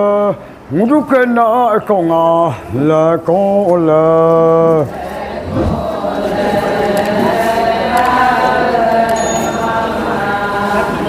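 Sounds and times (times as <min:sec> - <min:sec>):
group chanting in unison: 0:04.8 - 0:11.0.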